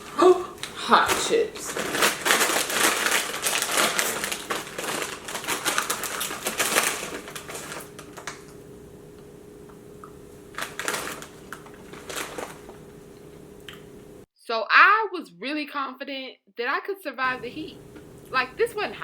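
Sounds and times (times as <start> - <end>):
snack bag crackling: 0.0 - 8.6, 10.5 - 13.0
faint steady hum: 0.0 - 14.3, 17.2 - 19.0.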